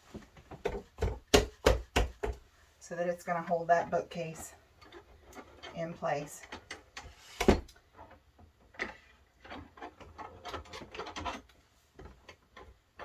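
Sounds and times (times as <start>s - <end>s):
sharp wooden knock: 0.6s - 2.4s
wood scraping and rubbing: 3.3s - 12.2s.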